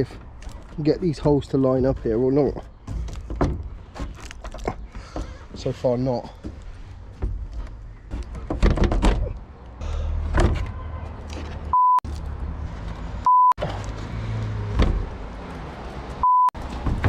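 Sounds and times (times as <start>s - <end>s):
knocks and handling noise: 0.2s - 9.5s, 14.8s - 17.0s
censor bleeps: 11.8s - 12.0s, 13.2s - 13.6s, 16.2s - 16.6s.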